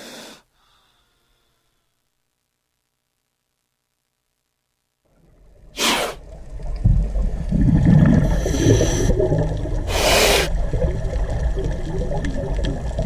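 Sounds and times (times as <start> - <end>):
snake hissing: 5.8 - 6.2, 9.8 - 10.6.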